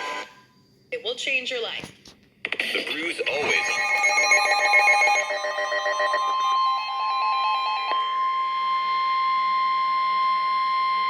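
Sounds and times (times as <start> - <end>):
rapid electronic beeping: 3.2 - 7.8
steady warning alarm tone: 3.5 - 11.0.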